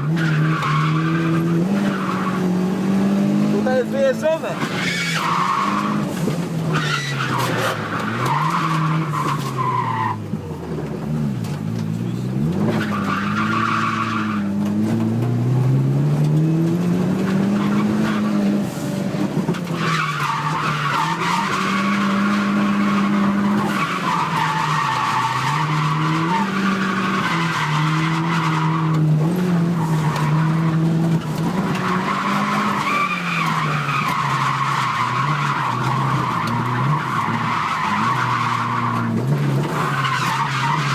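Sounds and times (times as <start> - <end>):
car engine revving: 0.0 - 40.9
tyres squealing: 31.7 - 40.9.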